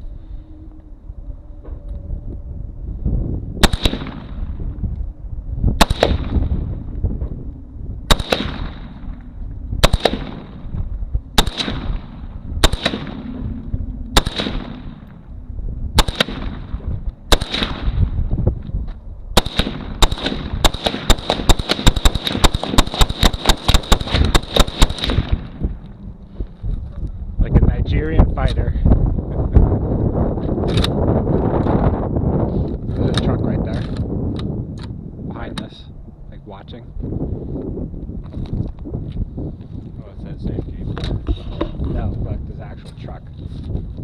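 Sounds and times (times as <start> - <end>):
rapid rifle fire: 3.6 - 4.4, 5.8 - 6.5, 8.1 - 9.0, 9.8 - 10.6, 11.4 - 13.2, 14.2 - 15.0, 16.0 - 16.7, 17.3 - 18.0, 19.4 - 25.5
rifle single shots: 3.6 - 4.6, 5.8 - 6.5, 8.1 - 9.1, 9.8 - 10.6, 11.4 - 13.3, 14.2 - 15.0, 16.0 - 18.1, 19.4 - 25.6.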